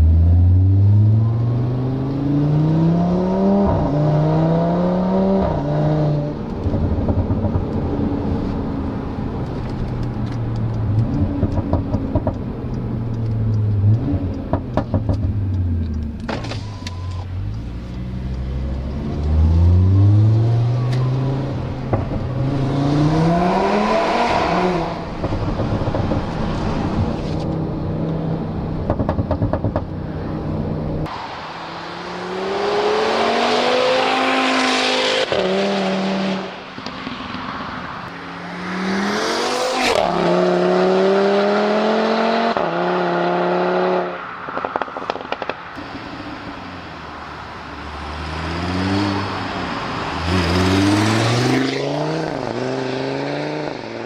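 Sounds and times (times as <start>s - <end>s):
car engine accelerating: 0.0s - 36.6s, 38.4s - 54.0s
exhaust crackles and pops: 25.1s - 27.6s, 28.8s - 30.0s, 44.4s - 46.6s.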